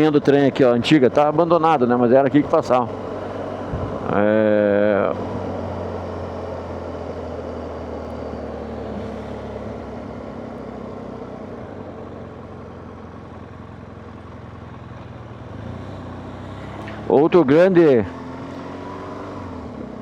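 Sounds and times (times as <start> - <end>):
motorcycle engine hum: 0.0 - 20.0
wind and road noise: 0.0 - 20.0.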